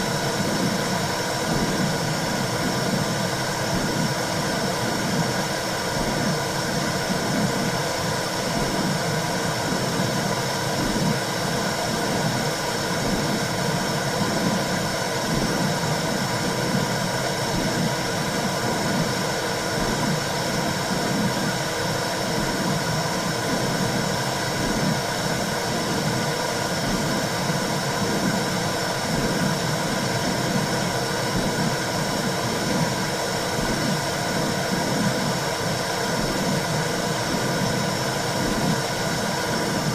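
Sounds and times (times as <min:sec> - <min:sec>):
throbbing heartbeat pulse: 0:00.1 - 0:07.8, 0:08.4 - 0:21.6, 0:22.3 - 0:39.9.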